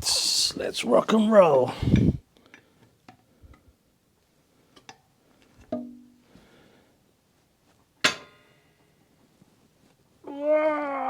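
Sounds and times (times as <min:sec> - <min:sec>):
metal tool clanks: 0:08.0 - 0:08.7.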